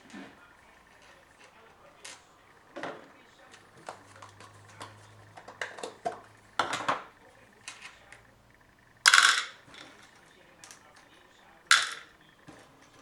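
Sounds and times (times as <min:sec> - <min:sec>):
metal parts clinking and knocking: 0:09.0 - 0:10.8, 0:11.7 - 0:12.2.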